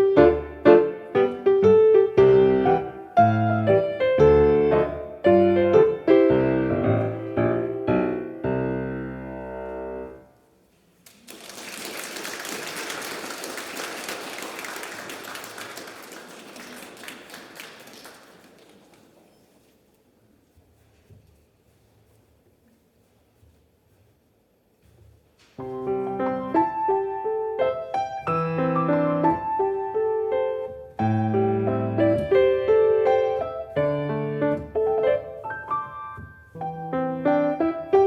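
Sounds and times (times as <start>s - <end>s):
piano playing: 0.0s - 10.3s, 25.6s - 38.0s
audience applauding: 11.0s - 19.3s.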